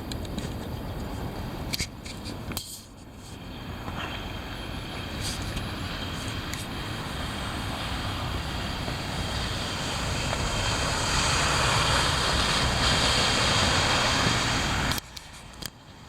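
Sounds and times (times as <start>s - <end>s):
wind blowing across microphone: 0.0s - 16.0s.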